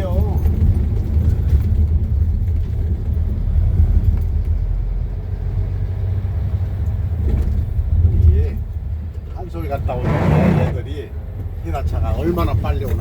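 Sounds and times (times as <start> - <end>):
diesel engine rumbling: 5.6 - 12.6.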